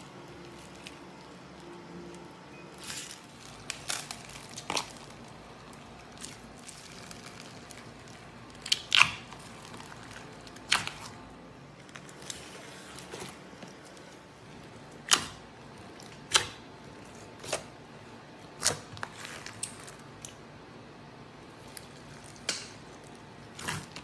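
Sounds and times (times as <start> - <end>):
slime clicking and popping: 6.2 - 11.1.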